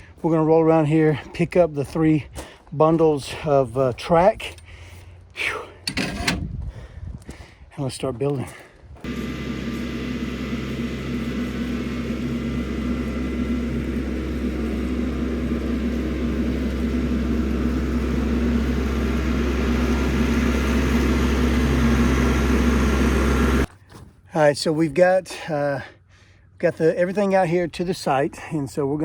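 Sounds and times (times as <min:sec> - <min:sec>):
vehicle engine droning: 0:09.0 - 0:23.7.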